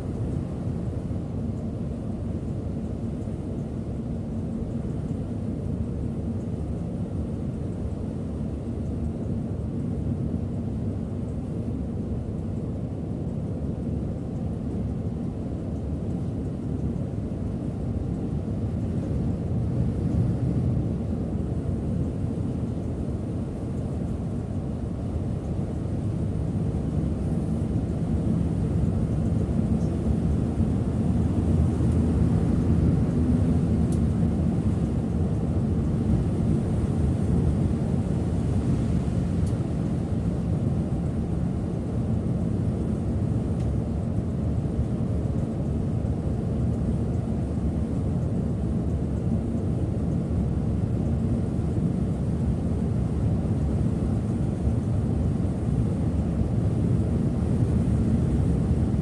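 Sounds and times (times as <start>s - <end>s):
coach engine and road noise: 18.2s - 45.6s, 53.0s - 59.0s.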